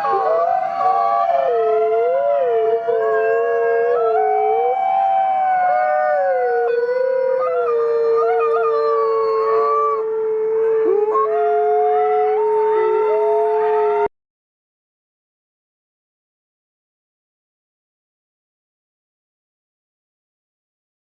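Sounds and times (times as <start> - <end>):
dogs howling in chorus: 0.0 - 14.1.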